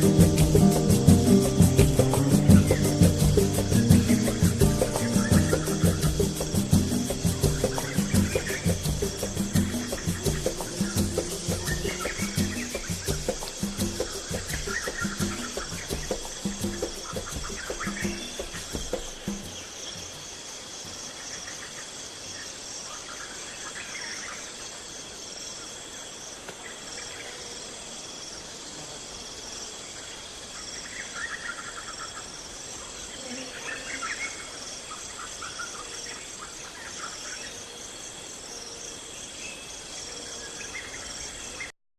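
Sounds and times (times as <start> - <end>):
birds chirping and calling: 0.0 - 19.8
insects trilling in chorus: 0.0 - 41.7.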